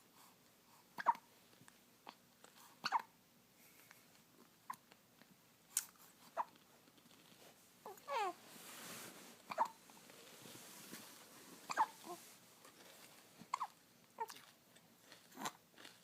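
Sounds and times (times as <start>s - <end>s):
person hiccuping: 2.8s - 3.1s, 9.5s - 9.8s, 11.7s - 12.0s.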